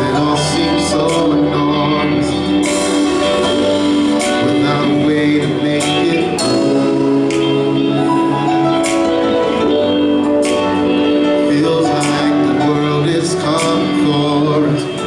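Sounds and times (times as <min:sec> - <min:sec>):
live band playing soul music: 0:00.0 - 0:15.0
cymbal hits: 0:02.6 - 0:06.8.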